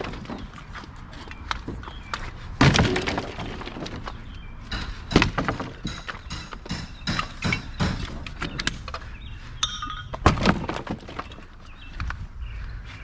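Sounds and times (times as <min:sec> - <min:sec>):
wood cracking and splintering: 0:02.6 - 0:04.1, 0:10.2 - 0:11.5.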